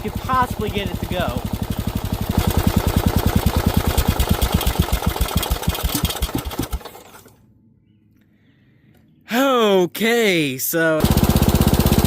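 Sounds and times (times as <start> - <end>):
engine idling and shutting down: 0.0 - 7.4, 11.0 - 12.0.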